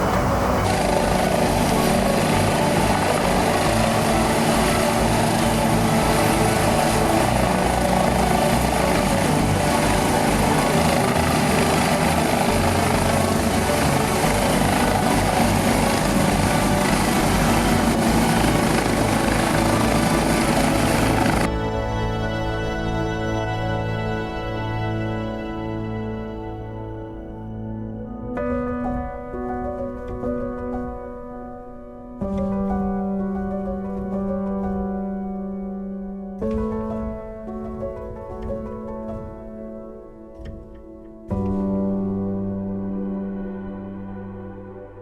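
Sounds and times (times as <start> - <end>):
helicopter rotor and engine: 0.0 - 23.7.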